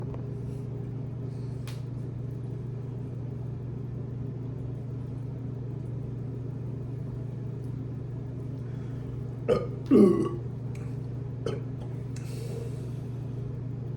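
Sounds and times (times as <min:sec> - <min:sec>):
steady low hum: 0:00.0 - 0:13.9.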